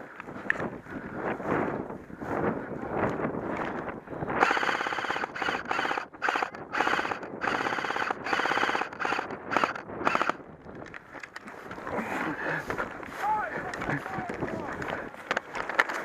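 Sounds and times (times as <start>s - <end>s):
airsoft gun firing bursts: 4.4s - 10.4s.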